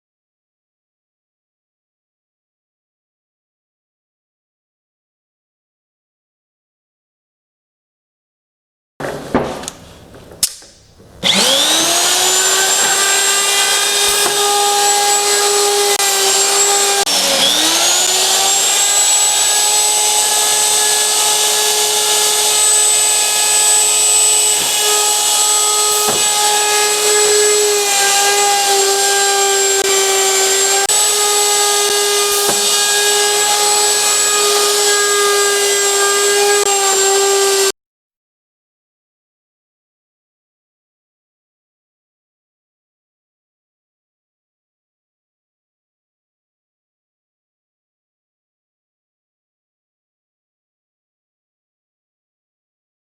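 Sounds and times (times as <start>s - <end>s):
router motor whining: 9.1s - 37.7s.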